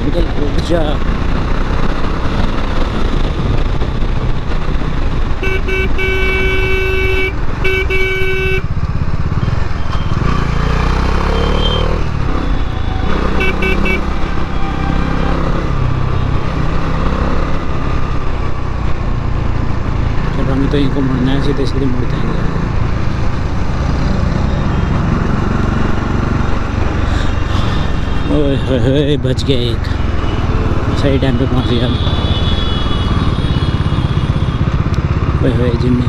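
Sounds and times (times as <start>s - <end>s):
rushing wind: 0.0s - 20.4s, 22.3s - 28.6s
motorcycle engine running: 0.6s - 21.2s, 30.0s - 36.0s
vehicle horn honking: 5.4s - 8.7s, 11.3s - 16.3s, 31.2s - 34.7s.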